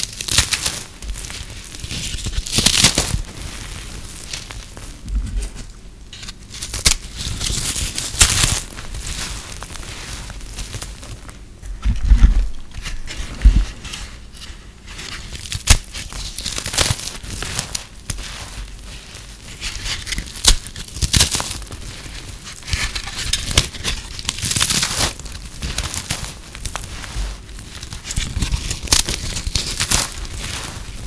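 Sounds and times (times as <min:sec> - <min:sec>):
brittle soap crunching: 0:00.0 - 0:31.0
dull thumps: 0:11.6 - 0:13.8.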